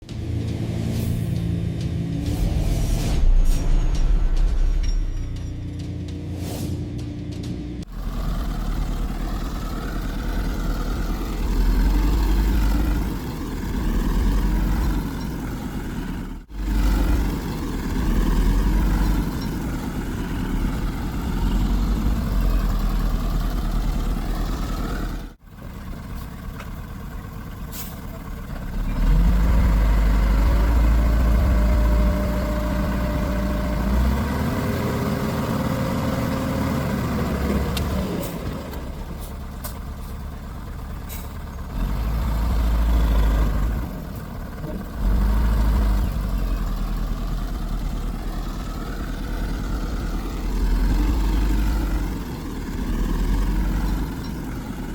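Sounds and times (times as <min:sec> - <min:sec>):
heavy machinery diesel engines revving: 0:00.0 - 0:54.9.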